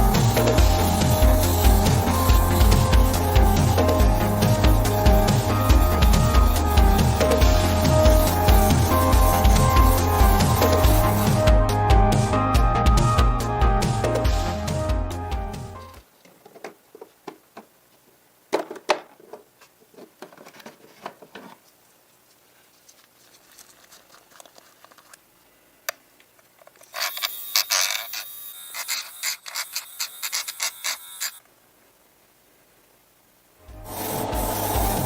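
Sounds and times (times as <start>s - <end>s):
rapid rubbing or scraping: 0.0s - 11.4s, 33.8s - 35.0s.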